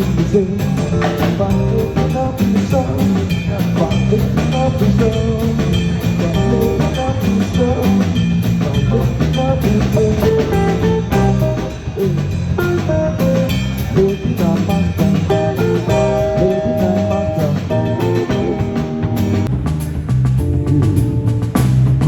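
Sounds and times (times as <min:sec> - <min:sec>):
bass guitar: 0:00.0 - 0:22.0
drum kit: 0:00.0 - 0:22.0
lead guitar melody: 0:14.8 - 0:19.5.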